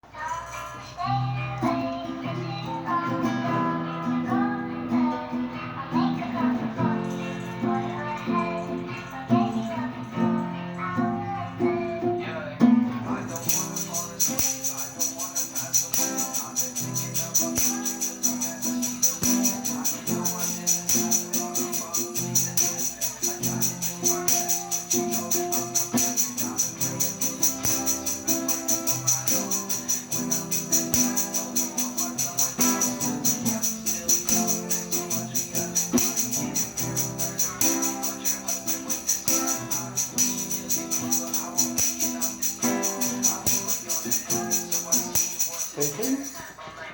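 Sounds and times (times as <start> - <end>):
acoustic guitar chords: 0.0 - 46.9
shaken hand percussion: 13.2 - 46.6.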